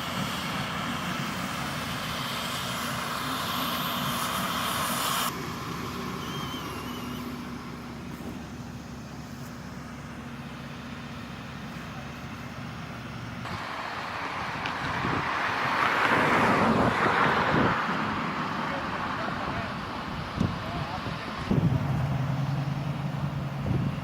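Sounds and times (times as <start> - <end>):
tyre hiss: 0.0 - 9.9
road traffic rumble: 0.0 - 24.0
vehicle approaching: 0.0 - 24.0.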